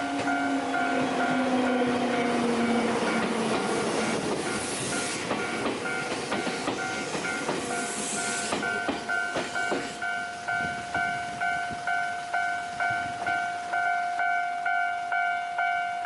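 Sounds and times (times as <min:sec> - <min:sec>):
crossing warning bell ringing: 0:00.0 - 0:16.0
train wheels clacking over rail joints: 0:00.2 - 0:10.1
hiss bursts: 0:04.3 - 0:11.0.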